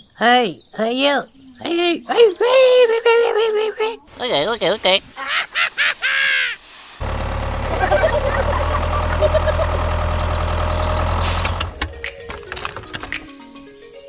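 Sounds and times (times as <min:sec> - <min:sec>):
low engine hum: 0:07.0 - 0:13.0.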